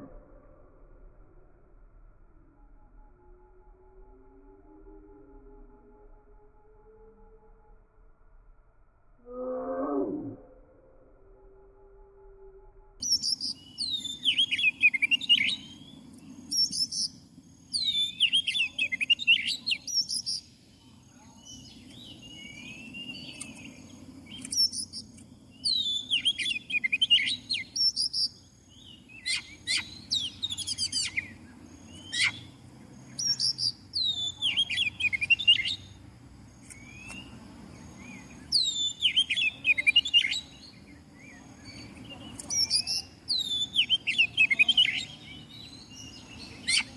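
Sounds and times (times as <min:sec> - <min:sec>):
low steady hum: 0:10.3 - 0:46.9
bird singing whistles and chirps: 0:13.0 - 0:20.5, 0:21.1 - 0:36.0, 0:36.6 - 0:46.9.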